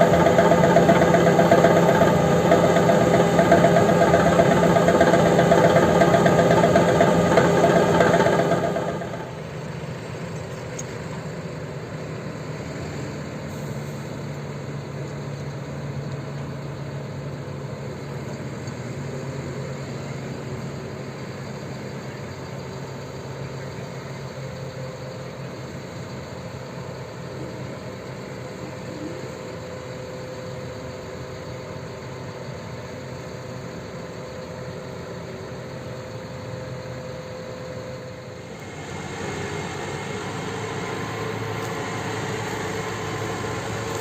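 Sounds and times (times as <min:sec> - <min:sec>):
louder engine note: 0:00.0 - 0:09.4
heavy vehicle engine humming: 0:00.0 - 0:44.0.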